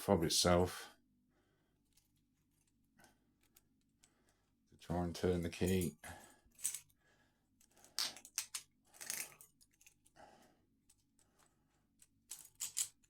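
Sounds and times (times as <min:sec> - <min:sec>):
key clicking in handcuff lock: 0:08.1 - 0:10.1.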